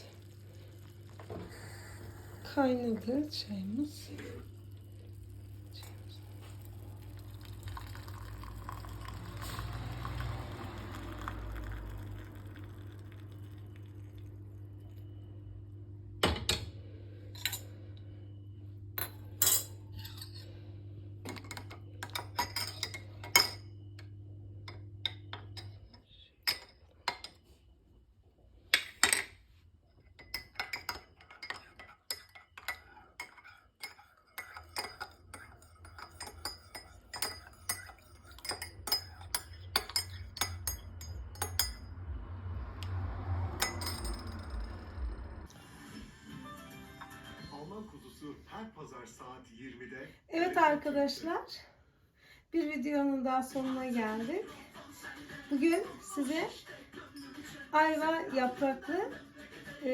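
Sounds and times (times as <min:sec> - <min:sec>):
kitchenware clinking: 0:07.2 - 0:09.7, 0:16.2 - 0:17.8, 0:19.0 - 0:20.6, 0:21.2 - 0:27.6, 0:28.7 - 0:42.1, 0:43.6 - 0:45.1
low hum: 0:39.3 - 0:45.7.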